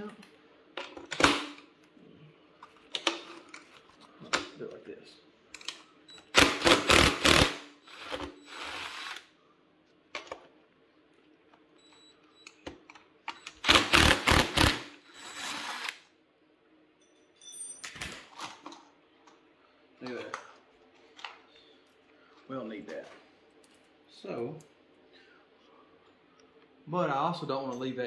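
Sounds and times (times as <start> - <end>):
power tool bursts: 6.3 - 9.3, 13.6 - 16.0.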